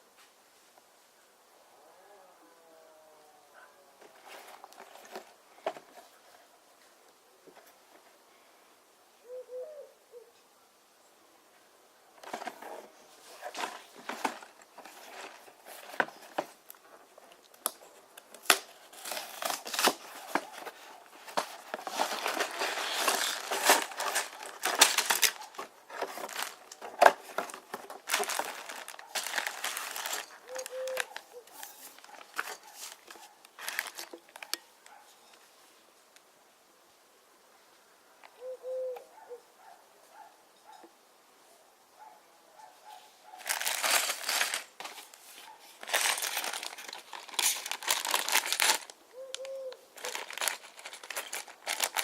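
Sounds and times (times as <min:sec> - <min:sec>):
plastic packaging crinkling and tearing: 0:12.2 - 0:34.6, 0:43.4 - 0:52.0.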